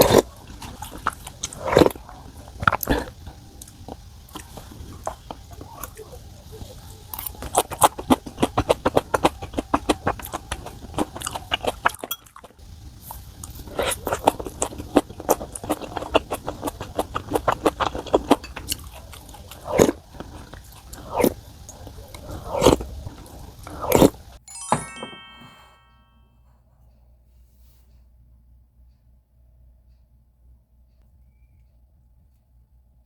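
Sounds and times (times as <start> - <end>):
person chewing food: 0.0 - 24.4.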